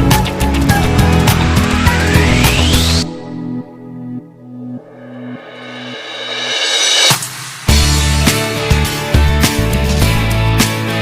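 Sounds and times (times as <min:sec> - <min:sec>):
music with driving drum beat: 0:00.0 - 0:03.1, 0:05.6 - 0:11.0
rising sweep: 0:00.6 - 0:08.2.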